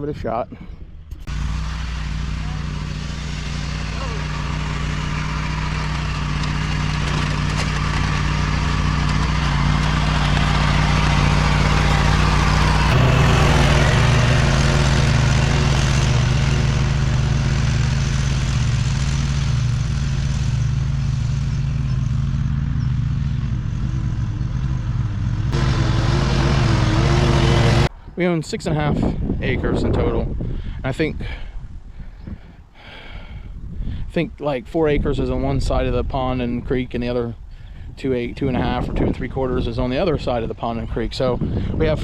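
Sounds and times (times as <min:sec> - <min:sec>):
tractor engine running under load: 0:01.1 - 0:27.9.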